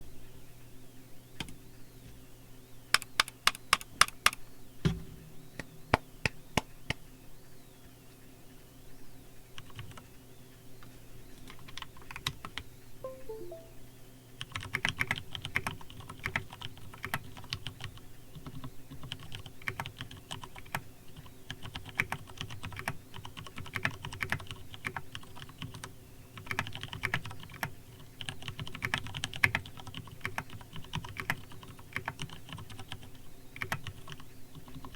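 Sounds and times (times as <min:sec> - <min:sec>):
mechanical keyboard typing: 0:03.0 - 0:04.4, 0:14.5 - 0:34.9.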